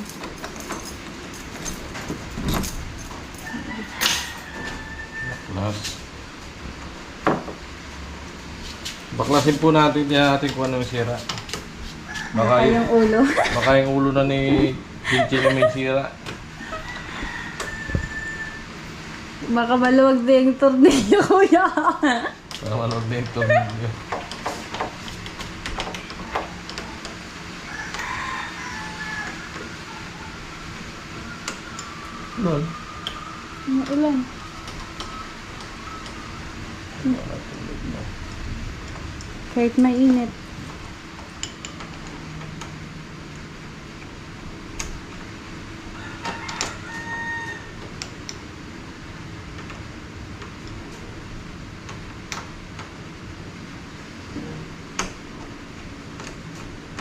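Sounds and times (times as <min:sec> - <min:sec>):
steady low hum: 0:00.0 - 0:57.0
rooster crowing: 0:03.3 - 0:05.9, 0:12.0 - 0:13.8, 0:16.5 - 0:19.2, 0:27.5 - 0:36.9, 0:45.8 - 0:48.0.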